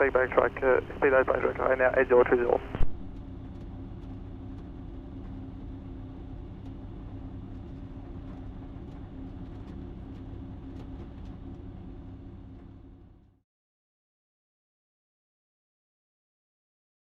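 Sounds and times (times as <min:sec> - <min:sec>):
light aircraft engine and propeller: 0:00.0 - 0:13.3.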